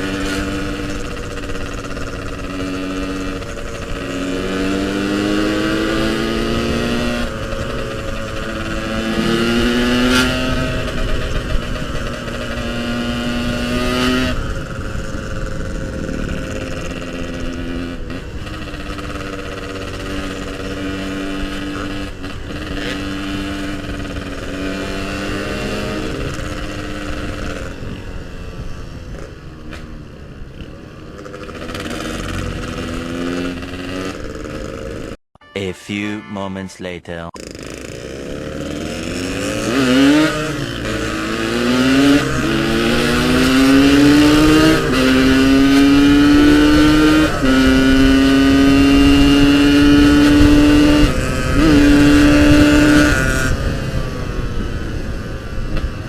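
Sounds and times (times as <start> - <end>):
motorcycle engine accelerating: 0.0 - 35.2, 37.4 - 56.0.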